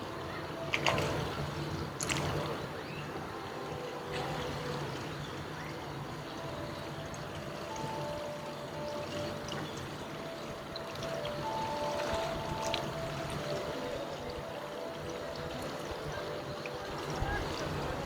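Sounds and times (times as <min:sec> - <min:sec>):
water trickling: 0:00.0 - 0:18.0.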